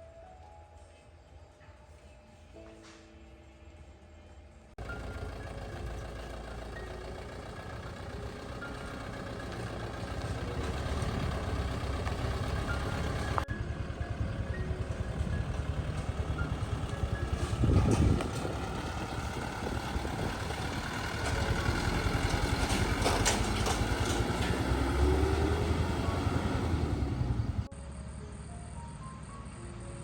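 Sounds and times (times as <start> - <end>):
engine running with low throb: 4.8 - 30.0
clicks and knocks: 20.8 - 25.0.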